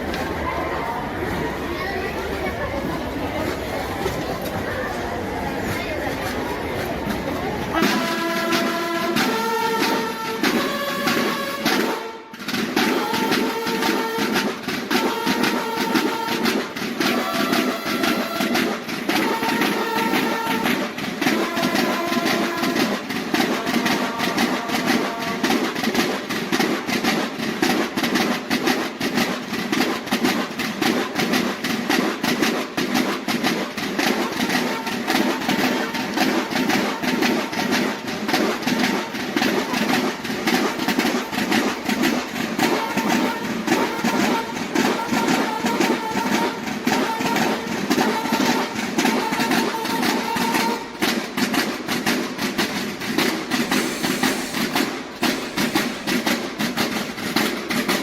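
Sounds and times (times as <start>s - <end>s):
bugles holding notes: 0.0s - 25.7s, 34.0s - 51.2s
snare drums military cadence: 0.0s - 58.0s.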